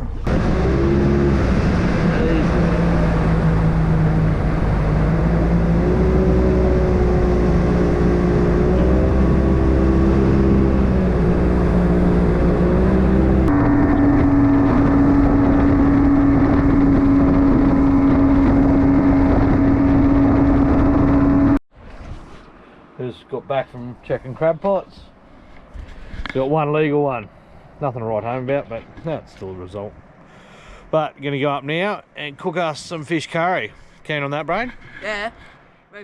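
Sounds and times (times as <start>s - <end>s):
outboard motor running: 0.0s - 21.6s.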